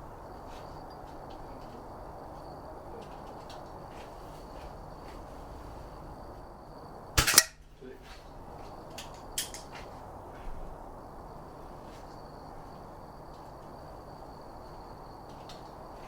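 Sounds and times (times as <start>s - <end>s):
air pistol shot: 7.2s - 7.6s.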